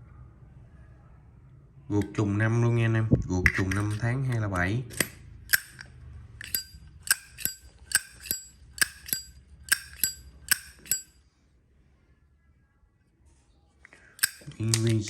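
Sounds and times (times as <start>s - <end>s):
lighter lid clicking open and shut: 6.4s - 11.0s, 14.2s - 15.0s.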